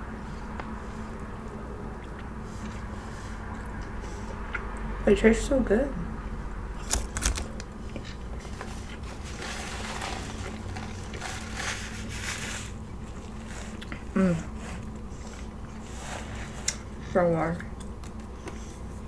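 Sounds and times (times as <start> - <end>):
person chewing food: 0.6 - 4.9, 6.7 - 11.4, 12.8 - 17.0
person humming mm: 14.1 - 14.6.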